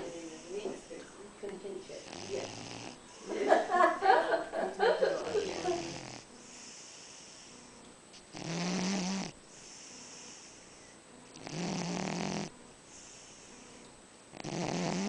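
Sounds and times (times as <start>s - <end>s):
quiet cat breaths: 0.0s - 1.2s, 8.7s - 15.0s
cat snoring: 1.9s - 3.2s, 5.2s - 7.7s, 8.3s - 13.7s, 14.3s - 15.0s.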